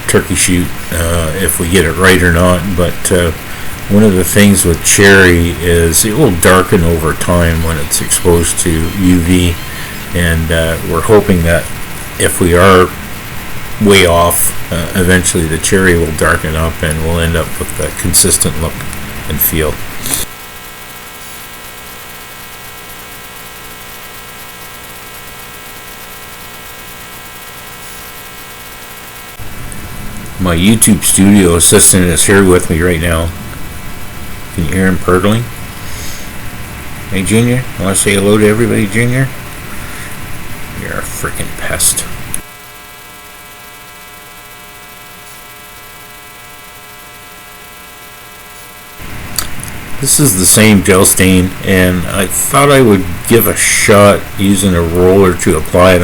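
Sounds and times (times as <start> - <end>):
electrical hum: 0.0 - 56.0.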